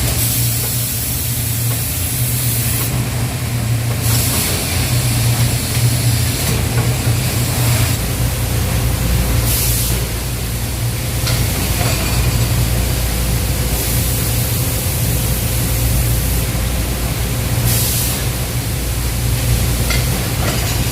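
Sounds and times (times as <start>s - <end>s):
machinery humming: 0.0s - 20.9s.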